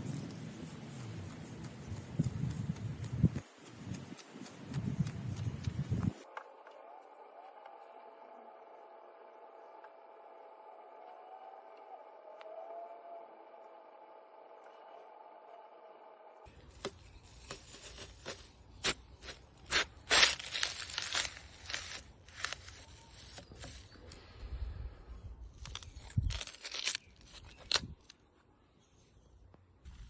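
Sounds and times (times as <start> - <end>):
sand being squished and crunched: 16.7 - 24.0.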